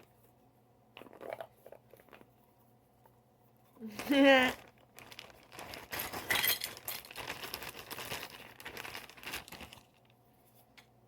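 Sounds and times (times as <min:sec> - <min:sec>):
plastic packaging crinkling: 0:03.8 - 0:10.2.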